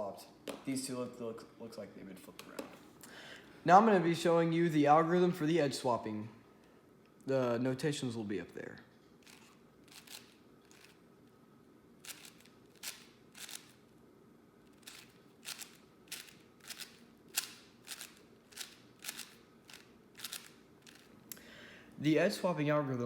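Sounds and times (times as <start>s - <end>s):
plastic cube layers clicking: 14.8s - 21.1s.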